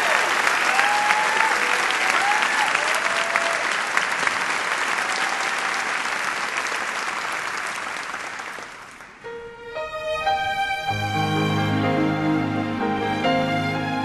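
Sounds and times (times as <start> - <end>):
crowd applauding: 0.0 - 9.2
soft instrumental music: 9.2 - 14.0.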